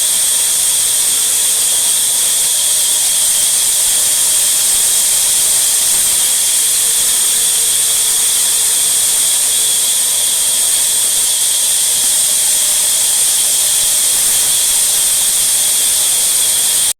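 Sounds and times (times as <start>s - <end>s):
loud steady hiss: 0.0s - 16.9s.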